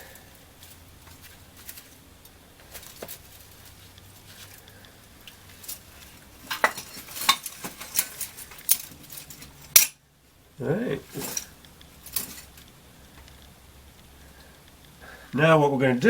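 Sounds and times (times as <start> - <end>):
metal parts clinking: 5.3 - 10.0, 11.1 - 12.6.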